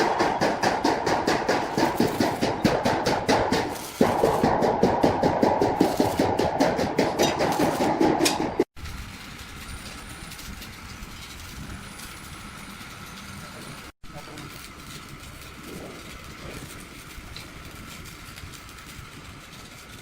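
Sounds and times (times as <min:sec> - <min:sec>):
rapid hammering on metal: 0:00.0 - 0:08.7.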